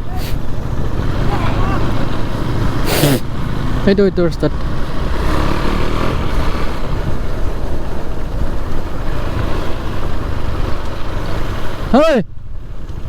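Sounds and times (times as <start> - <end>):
motorcycle engine drone: 0.0 - 13.0
wind rush on microphone: 6.0 - 13.0.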